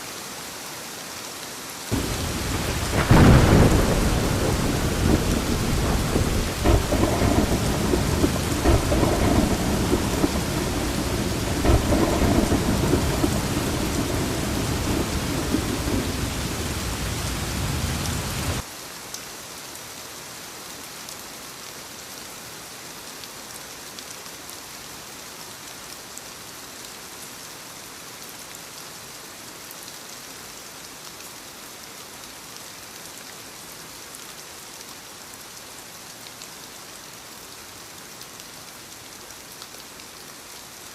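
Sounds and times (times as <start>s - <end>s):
rain falling: 0.0s - 40.9s
rolling thunder: 1.9s - 18.6s.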